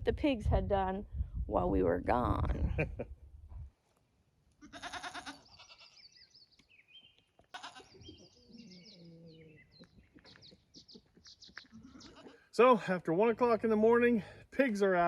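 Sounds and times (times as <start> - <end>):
goats bleating: 4.6 - 6.0, 7.5 - 8.0, 11.8 - 12.5.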